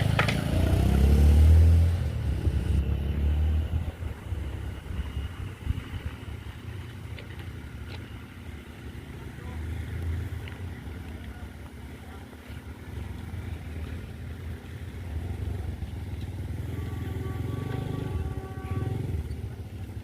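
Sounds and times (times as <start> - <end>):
diesel locomotive engine rumble: 0.0 - 20.0
locomotive horn: 16.5 - 19.4.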